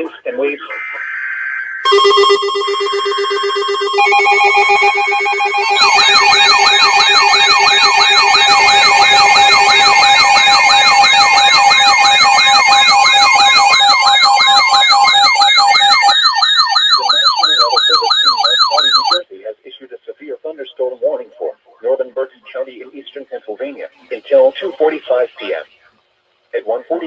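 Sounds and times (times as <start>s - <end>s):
steady alert tones: 0.0s - 19.2s
siren-like sweeping alarm tone: 0.7s - 19.2s.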